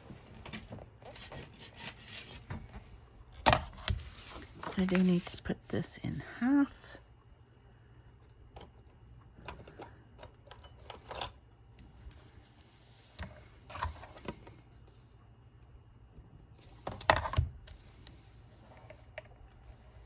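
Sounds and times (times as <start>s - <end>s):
crinkling rustle and knock: 0.0s - 5.9s
paper rustling and folding: 3.8s - 5.7s.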